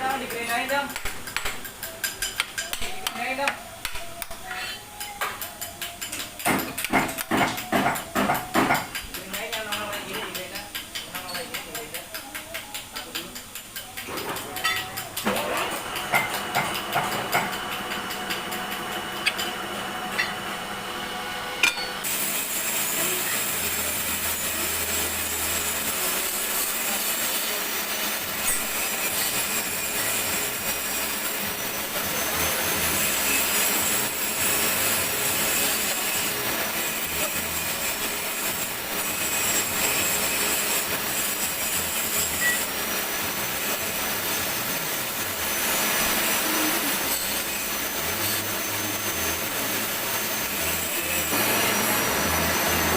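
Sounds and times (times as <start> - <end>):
lathe scraping hiss: 21.8 - 52.9.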